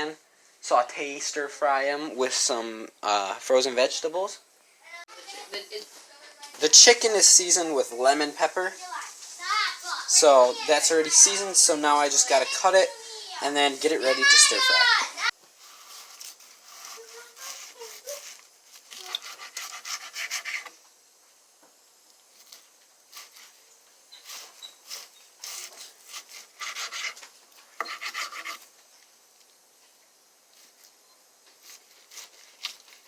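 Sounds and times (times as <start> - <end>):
knife sawing through raw meat: 15.6 - 20.7, 22.4 - 27.2, 27.8 - 28.7.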